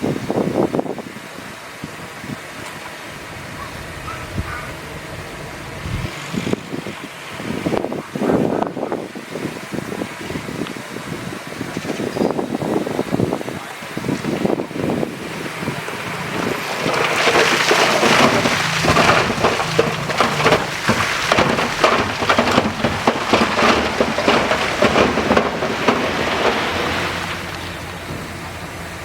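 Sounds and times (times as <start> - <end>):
diesel engine hum: 0.0 - 29.0
earth and stones sliding: 14.0 - 28.2.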